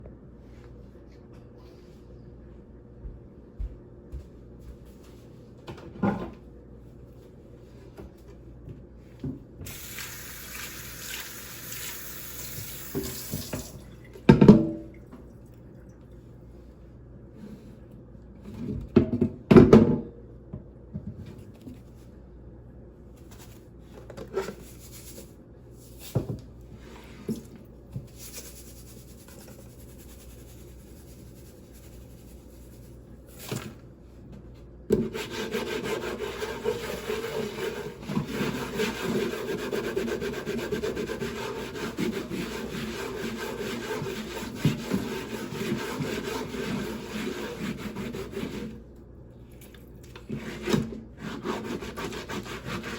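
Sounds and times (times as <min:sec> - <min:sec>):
salt scrubbing on wooden board: 0:35.2 - 0:48.7.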